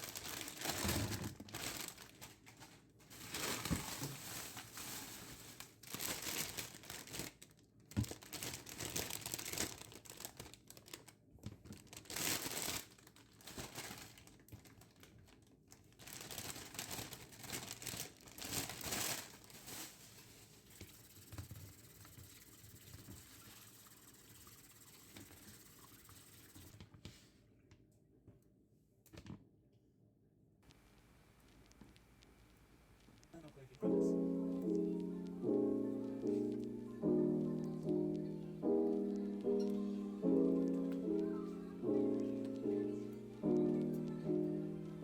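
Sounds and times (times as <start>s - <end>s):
packaging crinkling: 0.0s - 23.3s, 33.0s - 45.0s
faint steady hiss: 30.6s - 45.0s.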